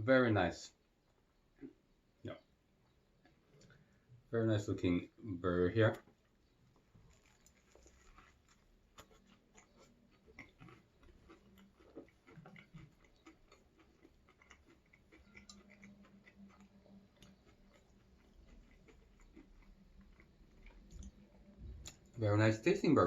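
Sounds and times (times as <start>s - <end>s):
chewing with wet mouth clicks: 5.9s - 22.2s.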